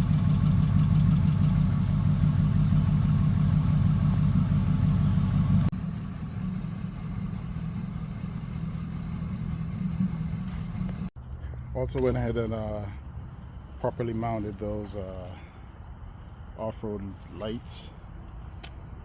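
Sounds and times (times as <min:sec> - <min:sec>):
pickup truck engine idling: 0:00.0 - 0:11.1.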